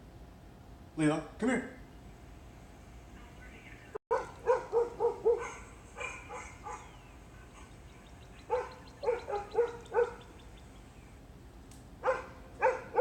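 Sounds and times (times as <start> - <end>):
dog barking: 4.1 - 7.8, 8.4 - 10.3, 12.0 - 13.0.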